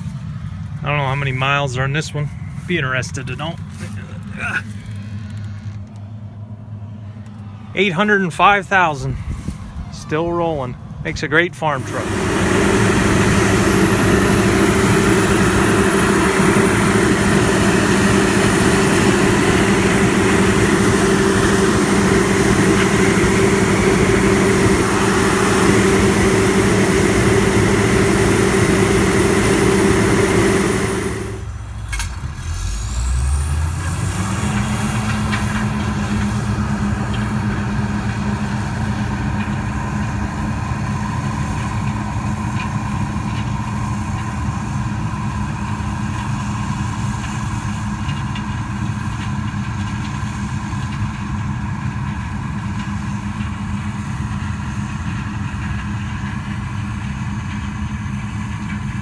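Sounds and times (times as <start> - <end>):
diesel truck engine running: 0.0 - 59.0
quieter engine hum: 0.0 - 59.0.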